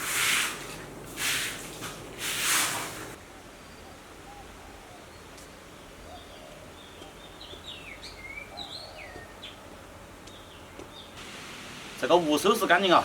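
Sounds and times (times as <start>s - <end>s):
birds singing: 3.6s - 11.2s.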